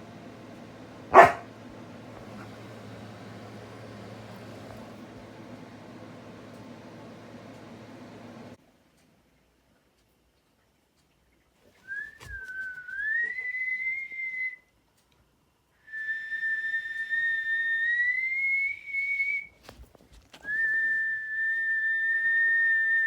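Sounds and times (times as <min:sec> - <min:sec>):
person whistling: 0:11.9 - 0:14.6, 0:15.9 - 0:19.5, 0:20.5 - 0:23.0.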